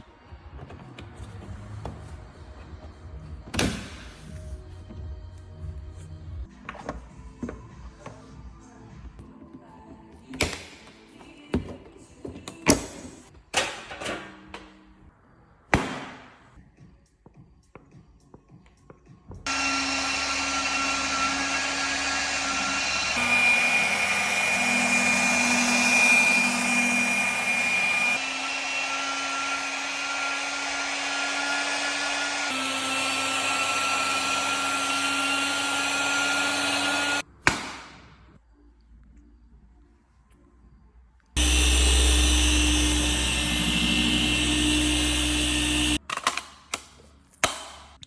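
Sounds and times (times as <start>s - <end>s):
electric power tool running: 19.5s - 37.2s, 41.4s - 46.0s.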